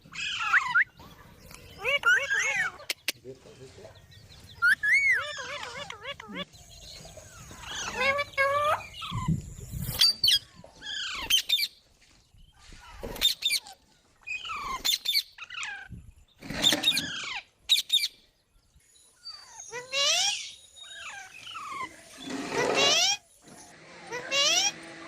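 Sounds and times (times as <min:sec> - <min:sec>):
parrot squawking: 0:00.1 - 0:01.0, 0:01.8 - 0:03.0, 0:04.6 - 0:06.5, 0:07.4 - 0:09.3, 0:24.1 - 0:24.8.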